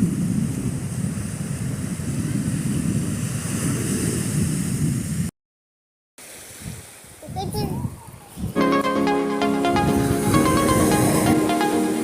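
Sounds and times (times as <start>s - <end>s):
wind buffeting microphone: 0.0s - 5.3s, 6.4s - 8.6s.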